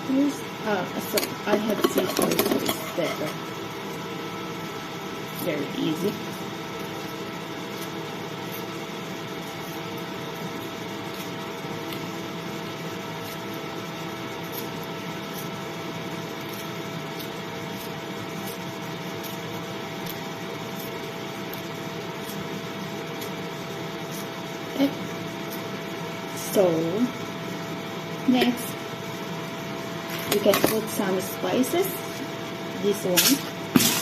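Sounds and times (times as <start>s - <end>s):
mechanical hum with whine: 0.0s - 34.0s.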